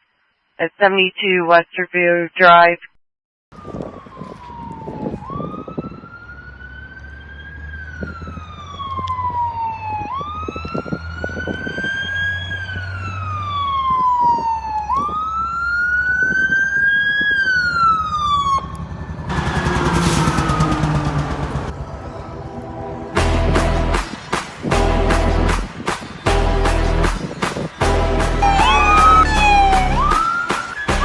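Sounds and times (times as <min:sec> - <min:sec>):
fire truck siren wailing: 0:03.6 - 0:24.2, 0:28.4 - 0:31.0
truck engine running: 0:18.6 - 0:23.9.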